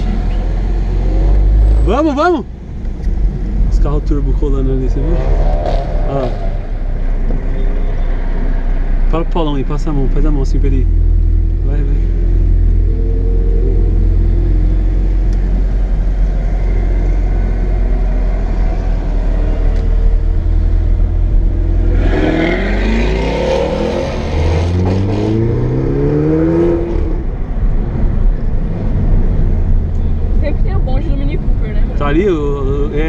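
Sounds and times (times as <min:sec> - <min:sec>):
car engine accelerating: 0:00.0 - 0:33.0
road rumble: 0:00.0 - 0:33.0.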